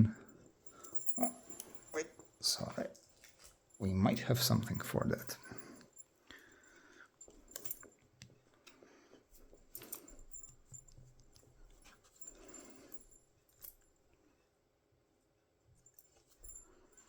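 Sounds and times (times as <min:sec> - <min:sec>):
handcuffs clicking and rattling: 0:00.7 - 0:06.0, 0:07.2 - 0:08.8, 0:09.6 - 0:11.5.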